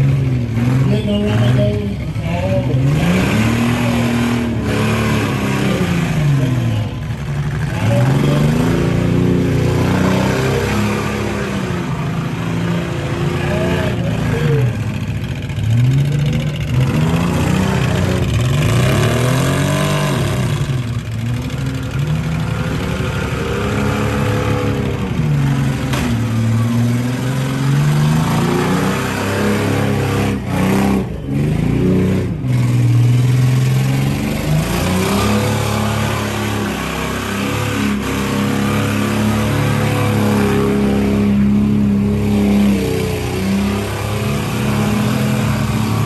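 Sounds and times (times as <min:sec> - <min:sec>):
car engines revving hard: 0:00.0 - 0:46.0.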